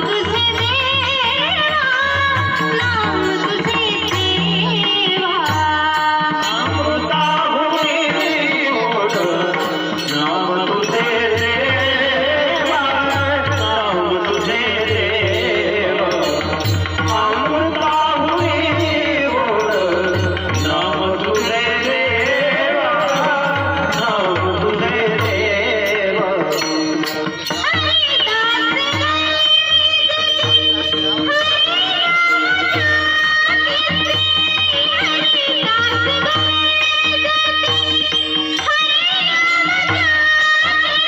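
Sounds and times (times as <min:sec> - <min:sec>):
hand drum beat: 0:00.0 - 0:29.8.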